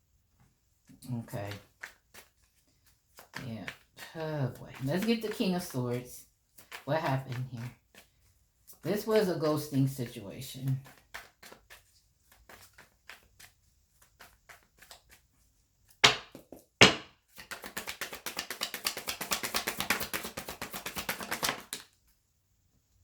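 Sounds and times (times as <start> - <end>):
cards flicking while shuffled: 1.4 - 8.1, 10.6 - 22.1
sharp taps: 16.0 - 17.1.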